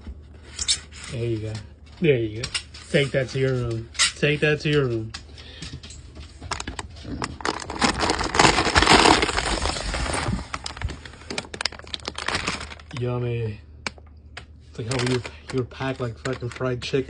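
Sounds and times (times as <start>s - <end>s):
packing material crinkling: 6.4s - 13.2s, 14.7s - 17.0s.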